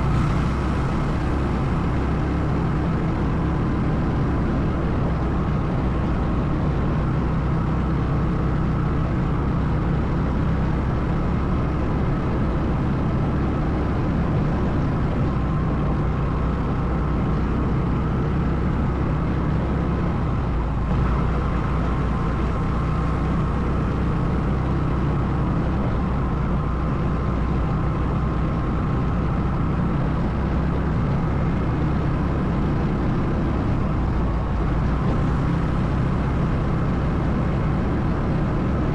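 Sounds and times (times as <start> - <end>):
atv engine rumble: 0.0 - 6.4, 18.1 - 38.9.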